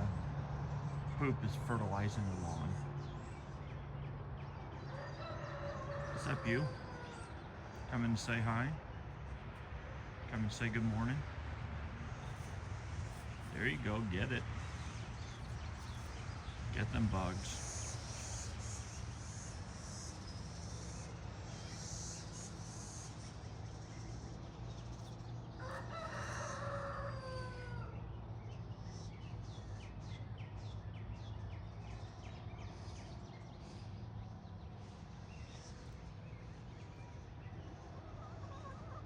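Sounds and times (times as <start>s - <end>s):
rooster crowing: 4.8s - 7.5s, 25.5s - 28.0s.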